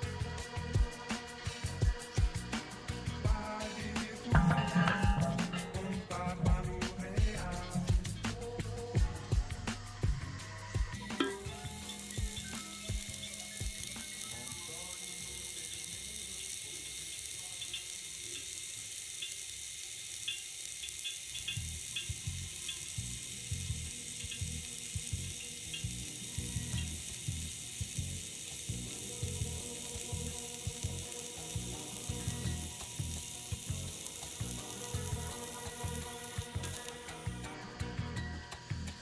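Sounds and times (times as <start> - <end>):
welding arc crackling: 0.8 - 9.0, 11.0 - 37.5.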